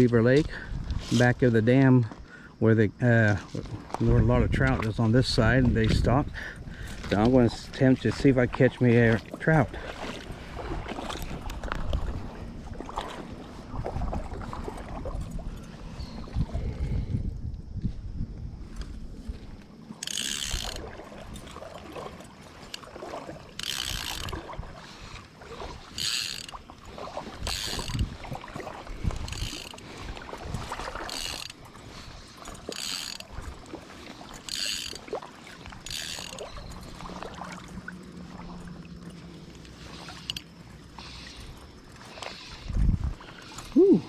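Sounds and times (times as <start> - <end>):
low water or wind rumble: 0.0 - 44.0
fly reel drag buzzing: 19.8 - 43.8.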